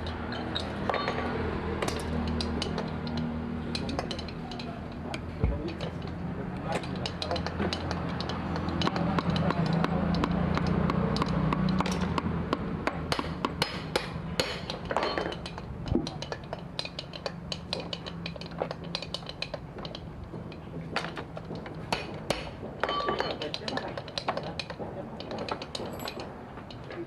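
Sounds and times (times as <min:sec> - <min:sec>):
metal tools clinking: 0:00.0 - 0:09.8, 0:14.6 - 0:21.2, 0:22.8 - 0:27.0.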